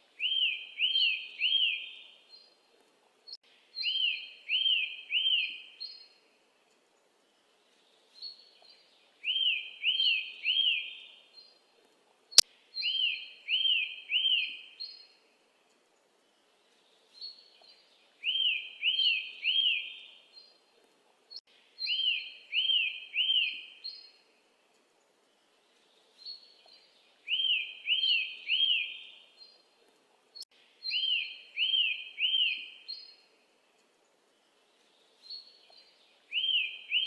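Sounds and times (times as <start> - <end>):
bird song with chirps and whistles: 0.2 - 2.5, 3.8 - 6.1, 8.2 - 11.1, 12.8 - 15.1, 17.2 - 20.5, 21.8 - 24.2, 26.2 - 29.6, 30.8 - 33.3, 34.8 - 37.0.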